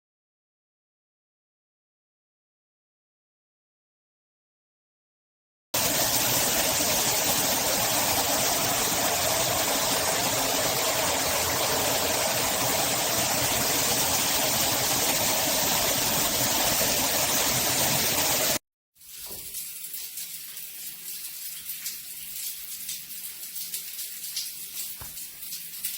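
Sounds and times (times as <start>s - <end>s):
shower water running: 5.8s - 25.9s.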